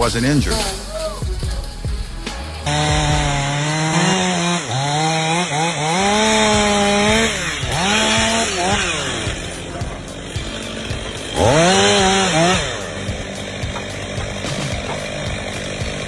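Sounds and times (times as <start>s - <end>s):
chainsaw running: 2.5s - 16.0s.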